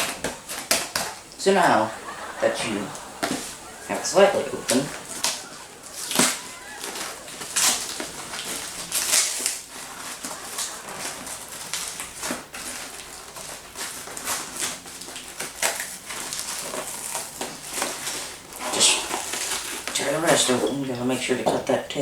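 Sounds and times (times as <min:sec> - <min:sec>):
cardboard ripping and crumpling: 0:06.0 - 0:20.0.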